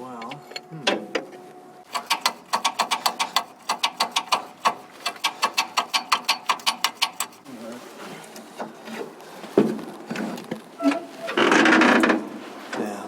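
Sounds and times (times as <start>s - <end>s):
ratcheting wrench clicking: 1.9s - 7.4s.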